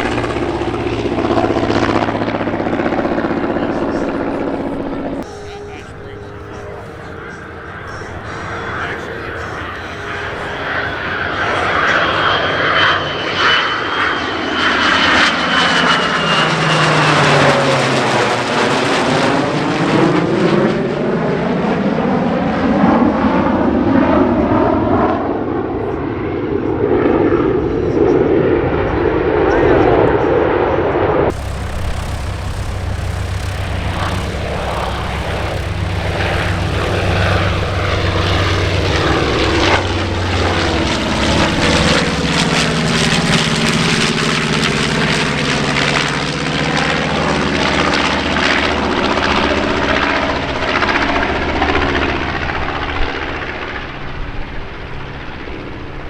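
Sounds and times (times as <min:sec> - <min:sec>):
propeller aircraft flying past: 0:00.0 - 0:22.0, 0:31.3 - 0:53.9.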